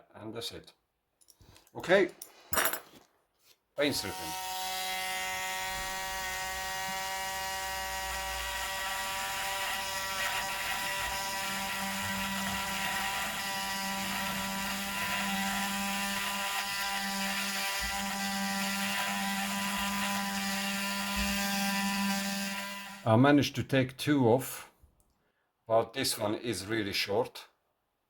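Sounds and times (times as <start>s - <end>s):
power tool whirring: 3.8s - 23.1s.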